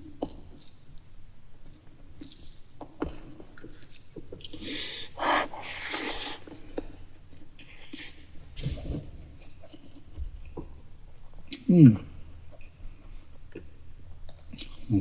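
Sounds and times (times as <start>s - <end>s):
wet chewing and lip-smacking: 4.6s - 6.4s
breathy rushing sound: 4.7s - 6.4s.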